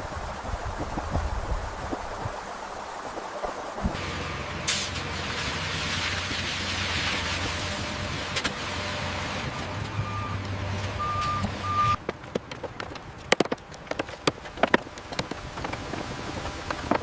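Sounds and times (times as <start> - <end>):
construction vehicle engine: 4.0 - 13.8
reversing alarm beeps: 9.9 - 10.4, 11.0 - 12.0
sharp clicks and knocks: 11.4 - 17.0.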